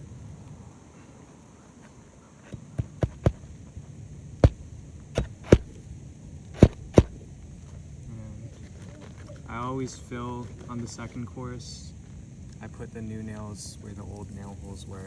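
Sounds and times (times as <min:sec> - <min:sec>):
faint low hum: 0:00.0 - 0:15.0
hammer striking roofing nails: 0:02.5 - 0:03.5, 0:04.4 - 0:04.6, 0:05.2 - 0:05.8, 0:06.6 - 0:07.2.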